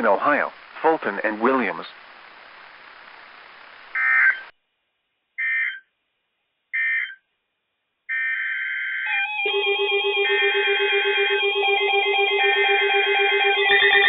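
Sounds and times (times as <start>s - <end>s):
warbling digital data squawks: 2.8s - 4.5s.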